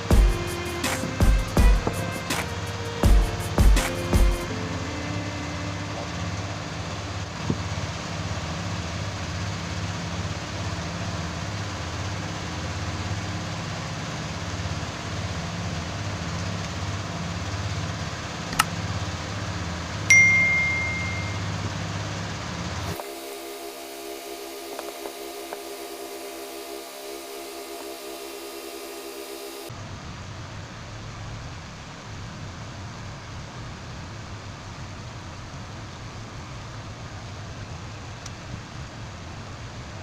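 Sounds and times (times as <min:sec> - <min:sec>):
low background hum: 0:00.0 - 0:27.9
metal object ringing when struck: 0:20.1 - 0:21.6.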